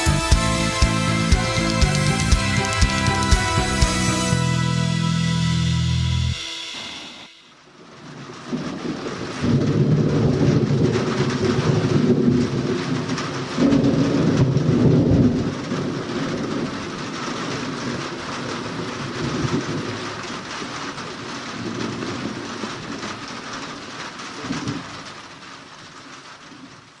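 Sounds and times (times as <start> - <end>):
heavy rain falling: 0.0 - 5.8, 7.8 - 27.0
rolling thunder: 8.3 - 17.1.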